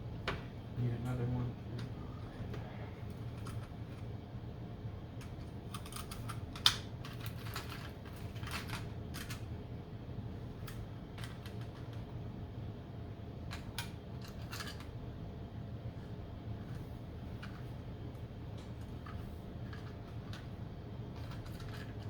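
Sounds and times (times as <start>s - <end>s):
small parts clicking and tapping: 5.2s - 9.5s, 18.6s - 22.0s.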